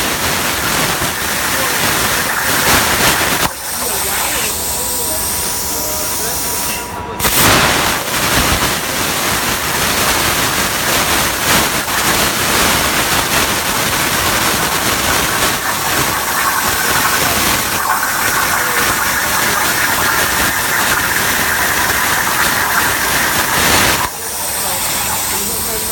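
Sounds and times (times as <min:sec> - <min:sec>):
plasma torch hissing: 0:00.0 - 0:25.9.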